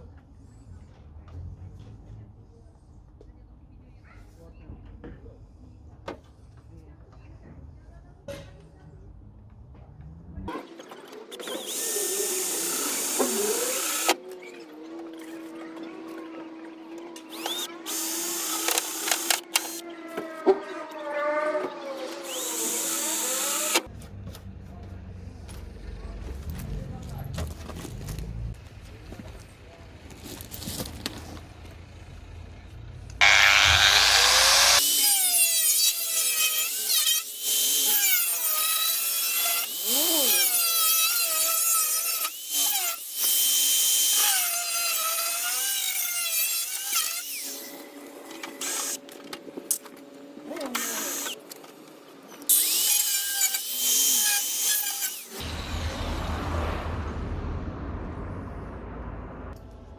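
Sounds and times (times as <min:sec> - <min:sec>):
power tool cutting sheet steel: 0:10.6 - 0:14.6, 0:17.2 - 0:23.9, 0:33.2 - 0:49.0, 0:50.7 - 0:51.4, 0:52.5 - 0:56.0.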